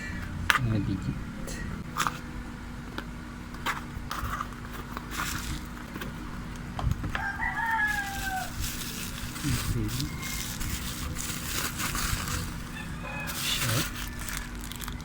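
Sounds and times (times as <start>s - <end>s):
clicks and rustles of packaging: 3.6s - 6.2s, 7.8s - 15.0s
rooster crowing: 7.1s - 11.2s, 12.2s - 15.0s.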